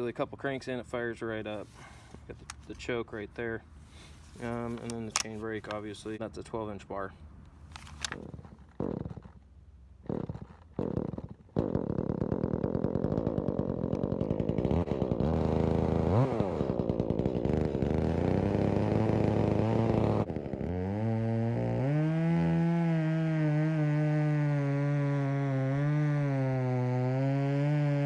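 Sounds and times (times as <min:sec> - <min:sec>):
chainsaw engine idling and revving: 0:01.5 - 0:06.2, 0:10.8 - 0:28.0
starter cord pulls: 0:01.6 - 0:02.9, 0:03.8 - 0:06.2, 0:07.6 - 0:08.5.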